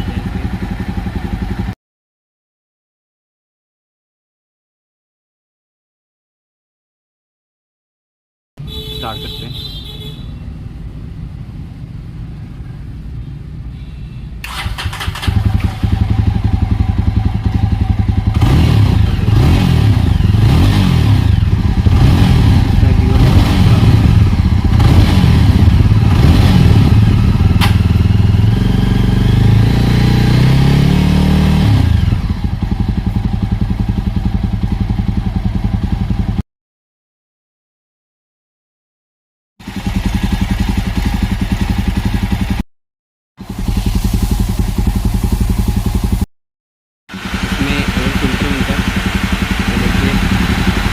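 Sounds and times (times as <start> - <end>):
motorcycle engine revving: 0.0 - 1.8, 14.4 - 36.4, 39.6 - 42.6, 43.4 - 46.3, 47.1 - 50.9.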